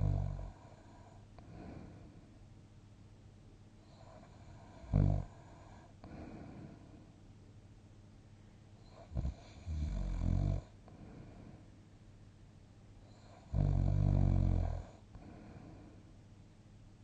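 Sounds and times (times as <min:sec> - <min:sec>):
person snoring: 0:00.0 - 0:02.0, 0:04.0 - 0:06.8, 0:13.2 - 0:15.8
quiet breathing: 0:00.0 - 0:02.5, 0:03.8 - 0:07.3, 0:08.2 - 0:12.0, 0:13.0 - 0:16.2.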